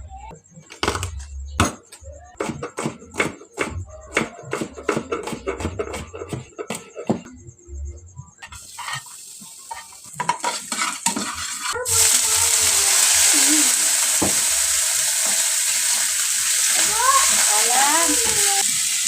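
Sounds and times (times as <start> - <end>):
food sizzling in hot oil: 8.5 - 19.0.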